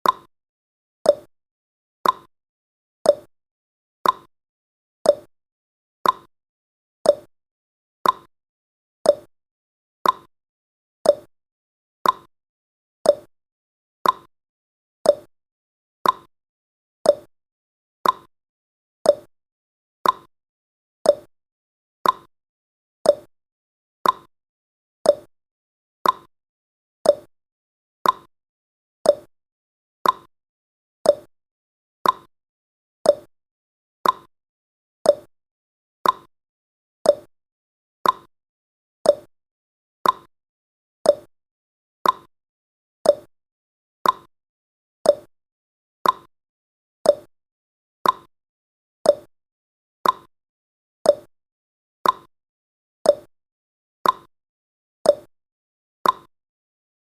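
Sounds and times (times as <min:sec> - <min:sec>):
timer ticking: 0:00.0 - 0:00.3, 0:01.1 - 0:01.3, 0:02.0 - 0:02.3, 0:03.1 - 0:03.3, 0:04.0 - 0:04.3, 0:05.1 - 0:05.3, 0:06.0 - 0:06.3, 0:07.1 - 0:07.3, 0:08.0 - 0:08.3, 0:09.1 - 0:09.3, 0:10.0 - 0:10.3, 0:11.1 - 0:11.3, 0:12.0 - 0:12.3, 0:13.1 - 0:13.3, 0:14.0 - 0:14.3, 0:15.1 - 0:15.3, 0:16.0 - 0:16.3, 0:17.1 - 0:17.3, 0:18.0 - 0:18.3, 0:19.1 - 0:19.3, 0:20.0 - 0:20.3, 0:21.1 - 0:21.3, 0:22.0 - 0:22.3, 0:23.1 - 0:23.3, 0:24.0 - 0:24.3, 0:25.1 - 0:25.3, 0:26.0 - 0:26.3, 0:27.0 - 0:27.3, 0:28.0 - 0:28.3, 0:29.0 - 0:29.3, 0:30.0 - 0:30.3, 0:31.1 - 0:31.3, 0:32.0 - 0:32.3, 0:33.1 - 0:33.3, 0:34.0 - 0:34.3, 0:35.1 - 0:35.3, 0:36.0 - 0:36.3, 0:37.1 - 0:37.3, 0:38.0 - 0:38.3, 0:39.1 - 0:39.3, 0:40.0 - 0:40.3, 0:41.1 - 0:41.3, 0:42.0 - 0:42.3, 0:43.0 - 0:43.3, 0:44.0 - 0:44.3, 0:45.1 - 0:45.3, 0:46.0 - 0:46.3, 0:47.1 - 0:47.3, 0:48.0 - 0:48.3, 0:49.1 - 0:49.3, 0:50.0 - 0:50.3, 0:51.1 - 0:51.3, 0:52.0 - 0:52.3, 0:53.1 - 0:53.3, 0:54.0 - 0:54.3, 0:55.1 - 0:55.3, 0:56.0 - 0:56.3.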